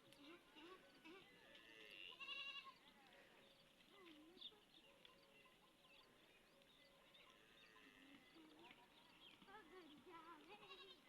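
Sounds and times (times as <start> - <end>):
livestock bleating: 1.0 - 2.8, 10.5 - 11.0.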